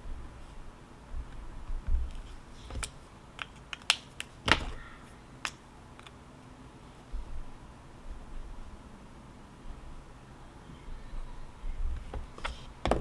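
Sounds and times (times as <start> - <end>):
faint low rumble: 0.0 - 2.6, 6.6 - 12.4.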